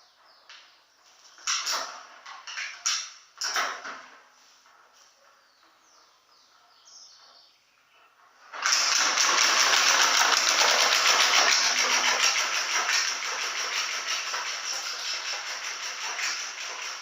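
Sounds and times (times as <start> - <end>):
motorcycle engine running hard: 8.9 - 17.0.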